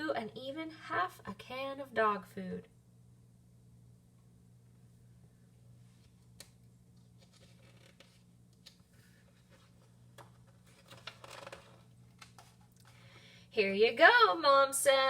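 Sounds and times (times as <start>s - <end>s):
book pages rustling: 5.9s - 13.0s.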